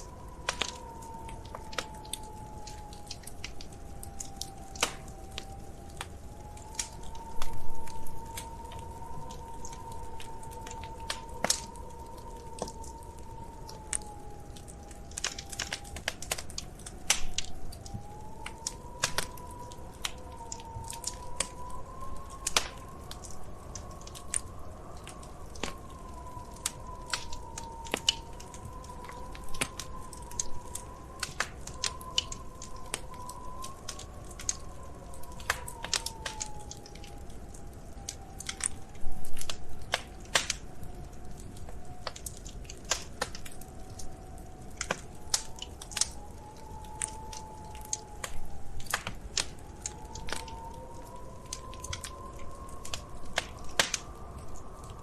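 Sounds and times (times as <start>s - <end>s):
faint whistling tone: 0.0s - 42.3s, 42.9s - 55.0s
wood fire crackling and popping: 0.0s - 55.0s.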